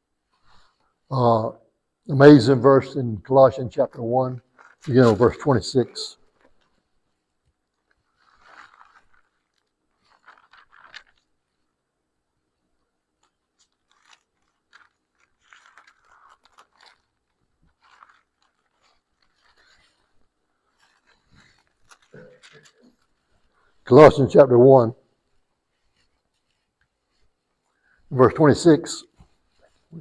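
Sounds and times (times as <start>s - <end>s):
thin pages being turned: 4.5s - 6.9s, 7.7s - 11.6s, 13.2s - 23.8s, 25.2s - 27.6s, 29.1s - 29.9s.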